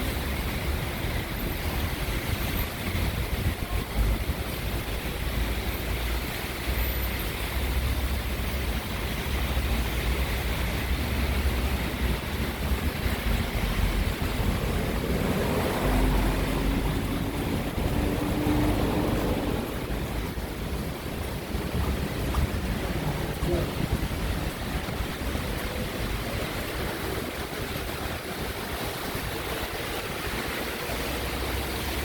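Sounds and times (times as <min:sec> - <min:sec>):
driving rain: 0:00.0 - 0:32.0
passing vehicle engine hum: 0:07.3 - 0:32.0
wind buffeting microphone: 0:10.6 - 0:32.0.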